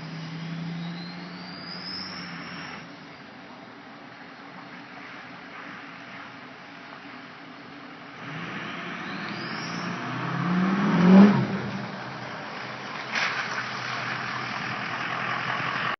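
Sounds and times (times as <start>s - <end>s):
truck engine revving: 0.0s - 2.9s, 8.2s - 15.9s
turbo whistle: 0.6s - 2.9s.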